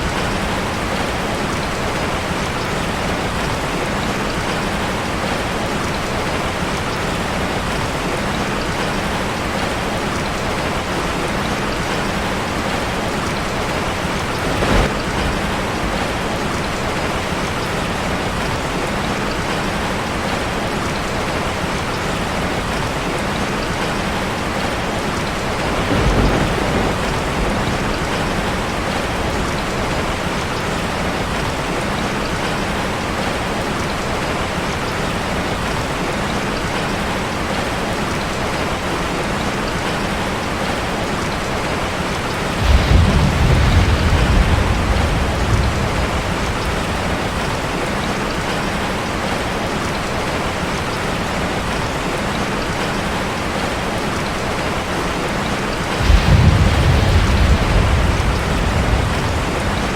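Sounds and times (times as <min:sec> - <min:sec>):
steady rain falling: 0:00.0 - 0:59.9
thunder rumbling: 0:11.5 - 0:19.6, 0:25.3 - 0:30.3, 0:42.5 - 0:48.6, 0:55.9 - 0:59.9.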